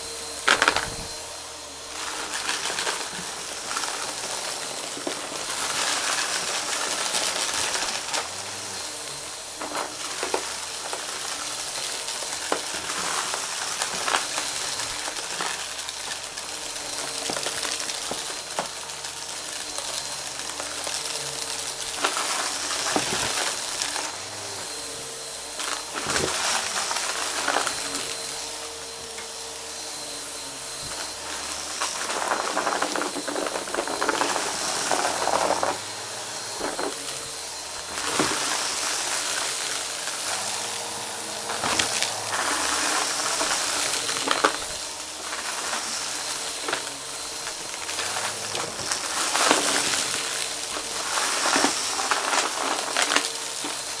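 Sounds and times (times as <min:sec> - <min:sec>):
vacuum cleaner motor hum: 0:00.0 - 0:54.0
debris crackling being sucked up: 0:30.4 - 0:54.0.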